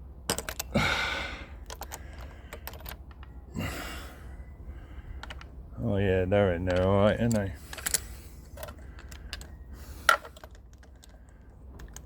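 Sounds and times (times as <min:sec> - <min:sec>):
breathy exhales: 0:00.7 - 0:02.6, 0:03.5 - 0:05.3.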